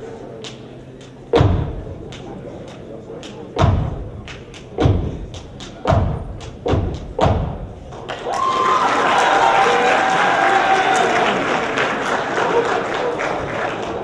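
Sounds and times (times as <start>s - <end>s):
heavy foot stomps on stage: 1.4s - 2.0s, 3.6s - 4.2s, 4.8s - 7.8s.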